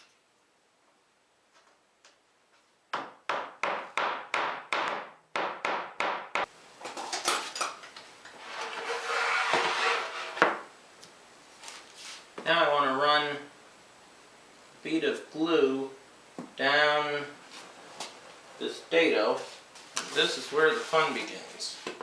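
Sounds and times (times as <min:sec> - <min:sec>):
handling and rubbing on wood: 0:08.3 - 0:10.6, 0:11.6 - 0:12.4, 0:19.3 - 0:22.0.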